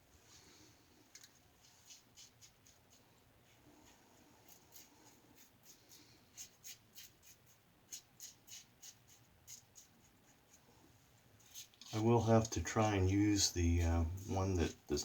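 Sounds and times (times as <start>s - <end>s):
razor scraping stubble: 4.4s - 10.6s, 11.4s - 15.0s.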